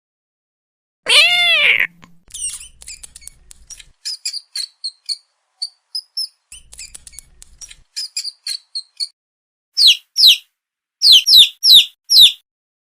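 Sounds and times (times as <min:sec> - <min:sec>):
parrot screeching: 0:01.1 - 0:01.9
parrot chirping: 0:01.1 - 0:09.1, 0:09.8 - 0:10.4, 0:11.0 - 0:12.4.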